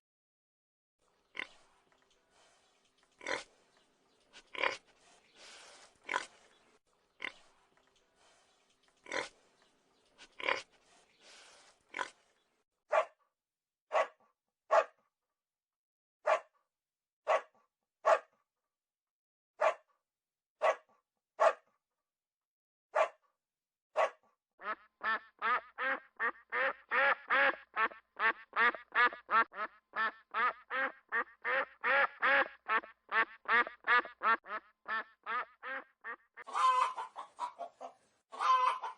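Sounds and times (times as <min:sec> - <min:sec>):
pig grunting: 0:03.2 - 0:03.6, 0:04.3 - 0:06.5, 0:09.0 - 0:09.5, 0:10.2 - 0:12.3
dog barking: 0:12.9 - 0:13.2, 0:13.9 - 0:15.0, 0:16.2 - 0:16.5, 0:17.3 - 0:18.3, 0:19.6 - 0:19.9, 0:20.6 - 0:21.6, 0:22.9 - 0:23.2, 0:24.0 - 0:24.2
ducks quacking: 0:24.6 - 0:38.9.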